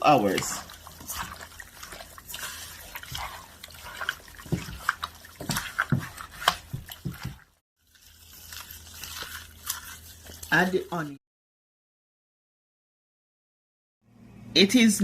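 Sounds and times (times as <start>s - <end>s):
hands rubbing raw chicken: 0.1s - 11.1s.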